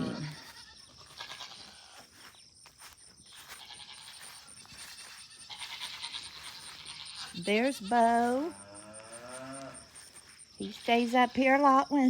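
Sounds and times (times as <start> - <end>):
distant goats bleating: 0.0 - 2.2, 3.3 - 11.6.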